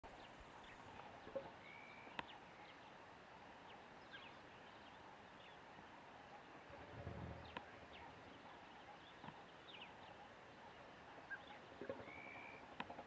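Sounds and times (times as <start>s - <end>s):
bird chirps: 11.2s - 12.7s.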